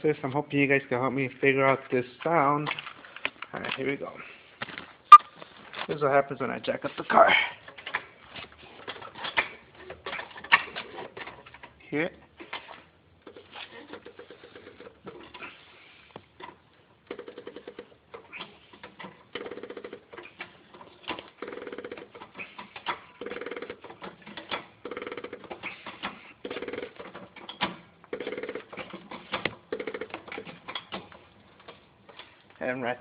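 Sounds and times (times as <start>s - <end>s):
suspension creaking: 16.4s - 32.3s.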